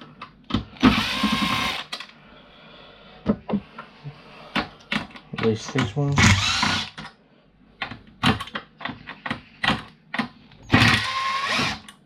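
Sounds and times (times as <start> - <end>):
drill whirring: 0.8 - 1.9, 6.2 - 7.0, 10.7 - 12.0.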